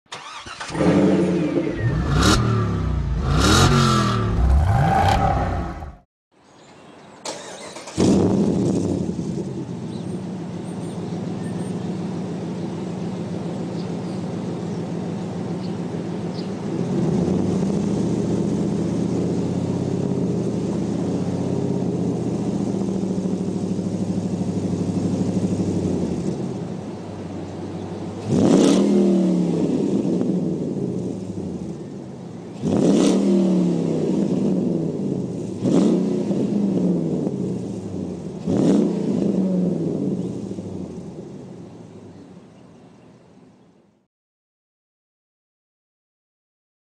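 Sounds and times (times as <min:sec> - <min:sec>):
car engine revving: 0:00.1 - 0:06.0, 0:28.2 - 0:31.2, 0:32.6 - 0:34.7, 0:35.4 - 0:40.5
car engine idling: 0:17.8 - 0:28.1.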